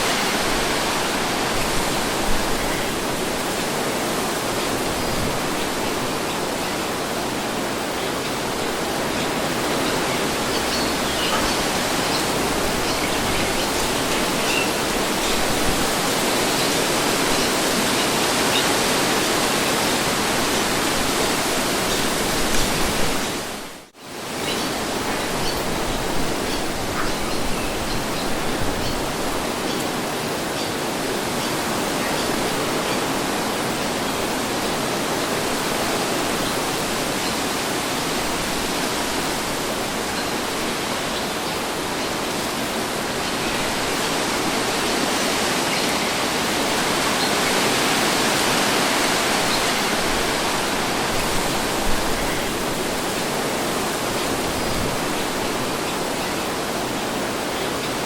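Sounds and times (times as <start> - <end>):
wind blowing: 0.0 - 58.0.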